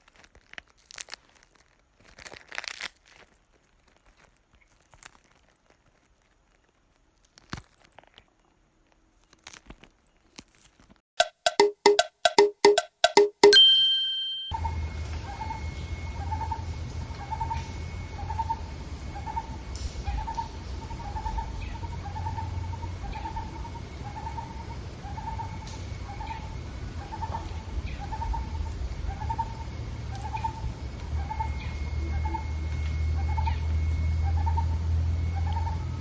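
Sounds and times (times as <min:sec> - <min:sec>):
steady low hum: 0:14.5 - 0:36.0.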